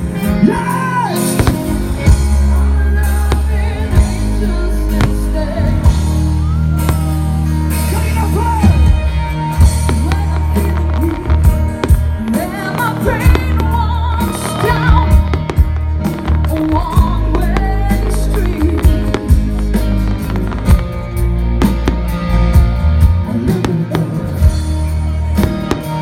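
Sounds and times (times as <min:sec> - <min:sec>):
held bass notes: 0:00.0 - 0:26.0
person singing: 0:00.1 - 0:20.0.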